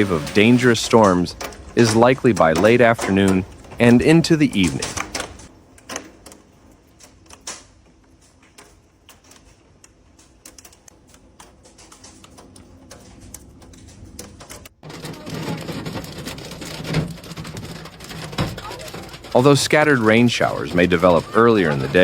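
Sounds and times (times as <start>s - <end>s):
hailstones striking hard surfaces: 14.8s - 22.0s.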